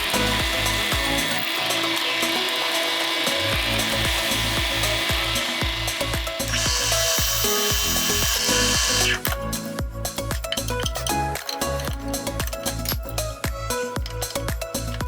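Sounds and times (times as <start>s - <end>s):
power tool working wood: 0.0s - 9.2s
background music with steady beat: 0.0s - 15.0s.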